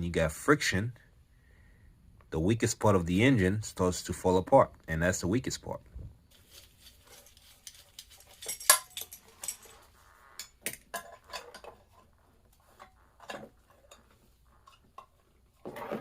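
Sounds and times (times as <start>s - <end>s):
metal engine parts clinking: 7.1s - 9.8s, 10.4s - 12.1s.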